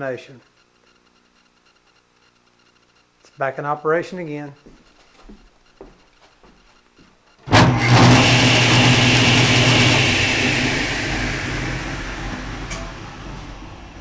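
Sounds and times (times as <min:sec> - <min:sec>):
table saw motor humming and whining: 0:07.5 - 0:14.0.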